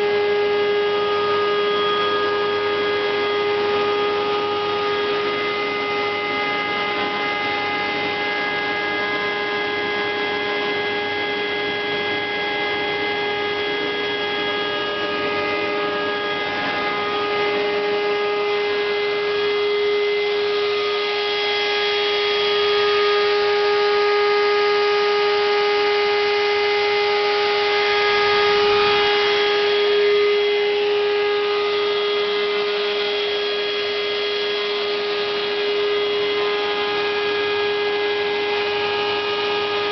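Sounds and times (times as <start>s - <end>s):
router machine whine: 0.0s - 39.9s.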